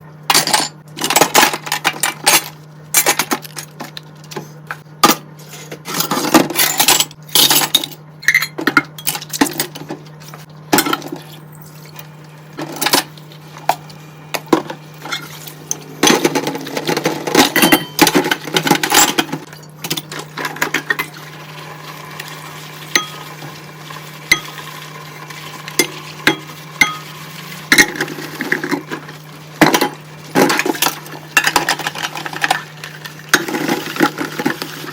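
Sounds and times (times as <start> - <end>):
steady low hum: 0.0 - 34.6
dishes and cutlery clattering: 16.0 - 19.3.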